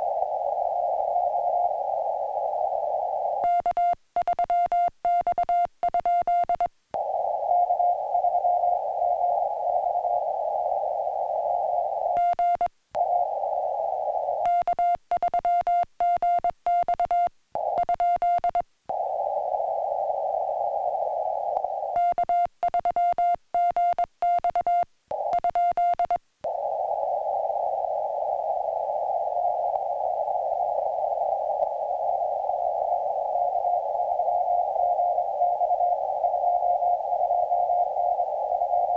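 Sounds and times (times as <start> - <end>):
radio receiver hiss: 0.0 - 38.9
morse code tone: 3.4 - 6.7, 12.2 - 12.7, 14.5 - 18.6, 22.0 - 26.2.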